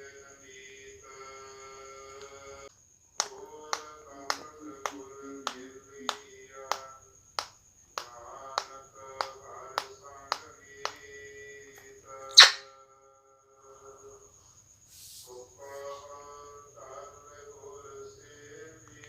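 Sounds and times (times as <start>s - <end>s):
finger-snap beat: 3.2s - 11.1s, 12.4s - 12.6s.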